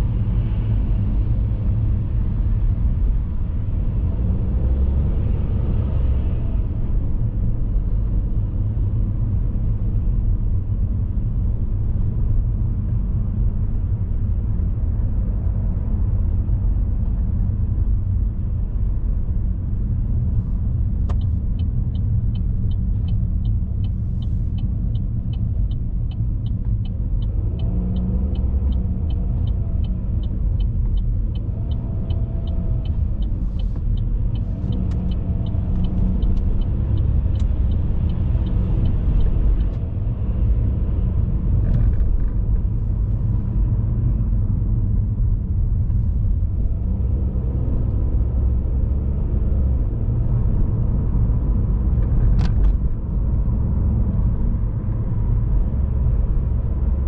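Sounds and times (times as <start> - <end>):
car engine and road rumble: 0.0 - 57.0
turn signal ticking: 20.7 - 44.4.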